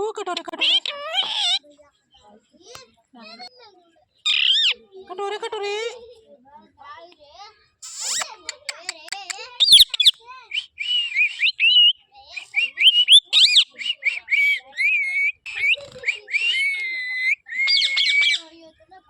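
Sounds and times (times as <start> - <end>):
parrot whistling and chattering: 0.5 - 1.6, 4.2 - 4.8, 7.8 - 18.5.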